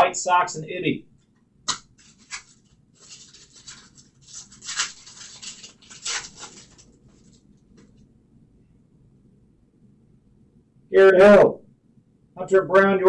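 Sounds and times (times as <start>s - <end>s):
cards and wrappers rustling: 1.7s - 8.0s.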